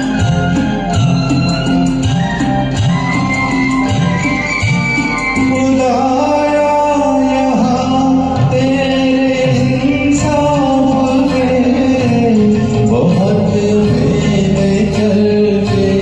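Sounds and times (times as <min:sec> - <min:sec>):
karaoke backing track: 0:00.0 - 0:16.0
man singing: 0:05.3 - 0:16.0.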